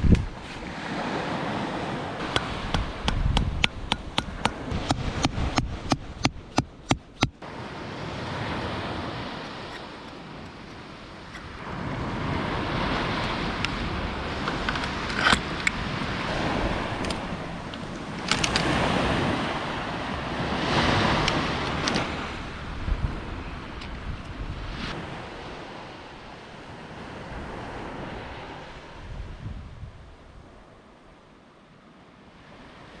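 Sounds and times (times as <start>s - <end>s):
wind on microphone: 0.0s - 31.0s
surf washing onto beach: 11.6s - 29.6s.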